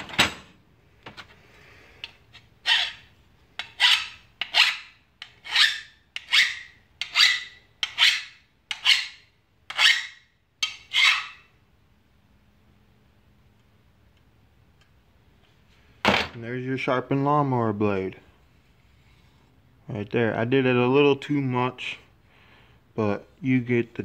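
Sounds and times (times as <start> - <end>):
hand file rasping on steel: 2.6 - 11.4.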